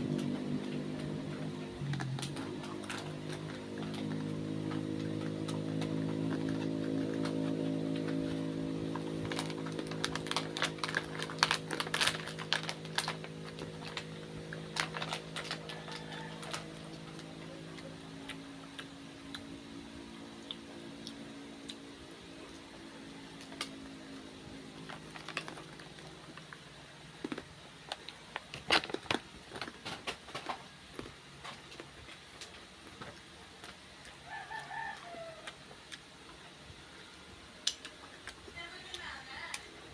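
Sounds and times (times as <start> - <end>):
low hum: 0.0 - 28.8
crackers being chewed: 0.0 - 39.9.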